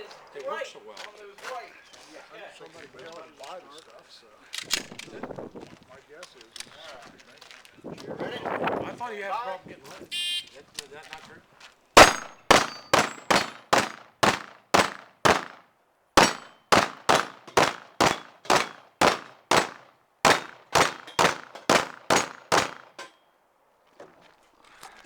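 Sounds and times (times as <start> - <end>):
pistol shots: 12.0 - 15.6, 16.2 - 23.0.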